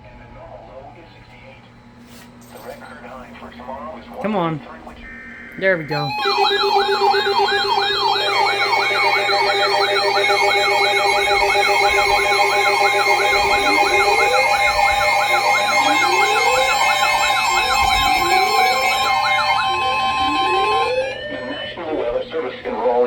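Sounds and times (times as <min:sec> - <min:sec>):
steady alarm tones: 0:03.0 - 0:23.0
high warble: 0:05.1 - 0:21.8
fast sweeping alarm yelps: 0:05.1 - 0:21.9.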